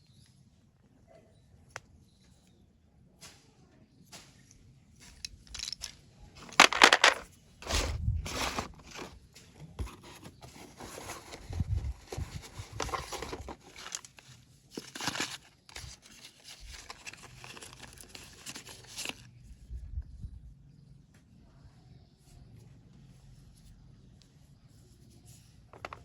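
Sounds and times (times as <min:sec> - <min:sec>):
crinkly packaging rustling: 0:05.0 - 0:19.3, 0:25.7 - 0:26.0
packaging tearing: 0:14.8 - 0:19.2.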